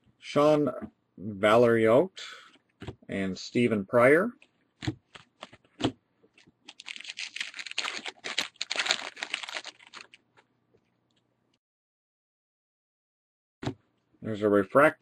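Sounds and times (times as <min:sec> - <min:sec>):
card stock crackling: 0:06.7 - 0:10.2.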